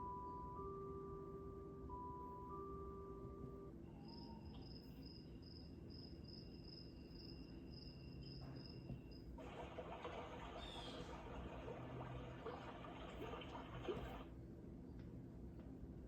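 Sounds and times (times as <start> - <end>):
recorded cricket chirps: 0.0 - 11.0.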